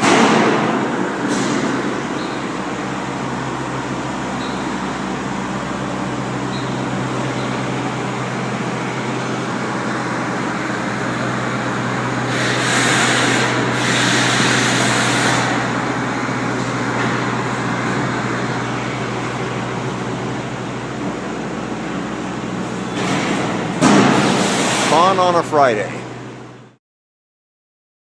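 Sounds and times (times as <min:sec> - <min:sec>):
boom lift machine hum: 0:00.0 - 0:26.8.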